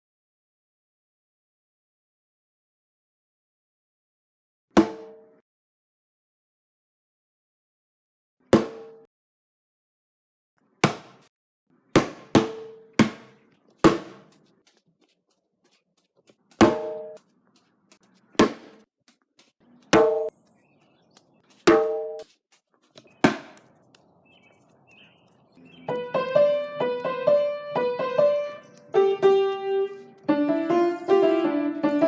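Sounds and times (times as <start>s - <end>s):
drum-like percussion hits: 12.0s - 14.3s, 16.6s - 17.2s.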